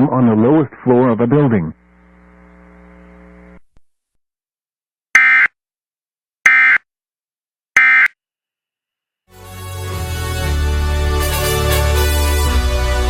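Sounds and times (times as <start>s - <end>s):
harsh digital data squawks: 5.2s - 5.5s, 6.5s - 6.8s, 7.8s - 8.1s
music: 9.3s - 13.0s.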